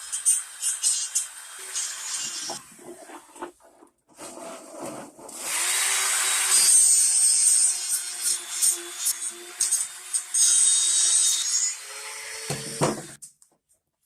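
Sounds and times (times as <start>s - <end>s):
grinder grinding metal: 0.0s - 2.6s, 5.3s - 13.2s.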